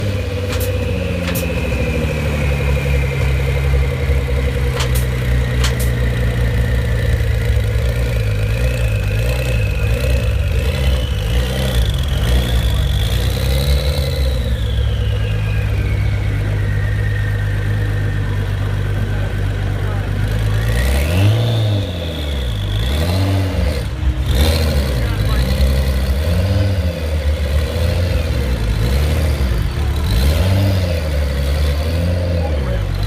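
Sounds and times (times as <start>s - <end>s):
car engine idling: 0.0s - 33.0s
turbo whistle: 14.0s - 19.0s.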